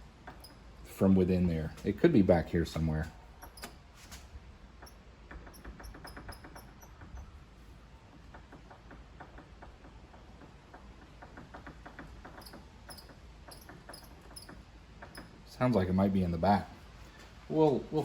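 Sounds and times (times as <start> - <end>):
lathe headstock squeaking: 4.7 - 7.4, 10.8 - 15.8.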